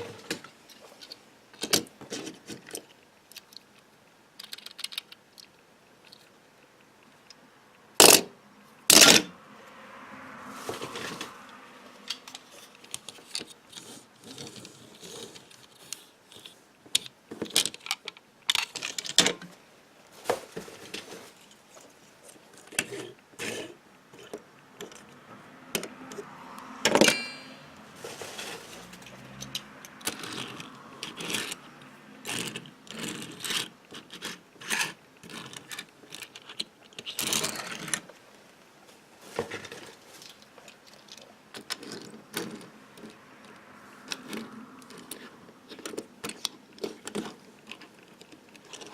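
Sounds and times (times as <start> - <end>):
toy cars clinking: 4.4 - 6.3, 8.0 - 8.3, 8.9 - 9.3, 26.8 - 38.1, 40.2 - 48.9.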